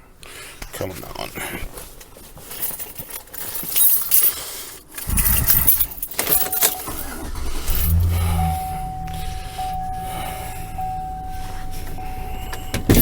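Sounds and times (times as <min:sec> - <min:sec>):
keys jangling: 0:02.4 - 0:09.6
low engine rumble: 0:05.0 - 0:13.0
steady high tone: 0:06.4 - 0:13.0.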